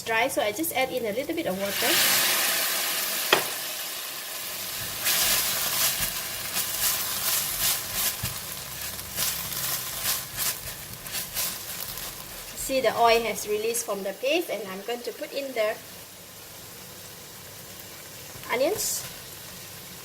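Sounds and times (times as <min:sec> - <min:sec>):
paste sizzling in oil: 0:00.1 - 0:14.2
spatula clacking and scraping: 0:04.8 - 0:13.4.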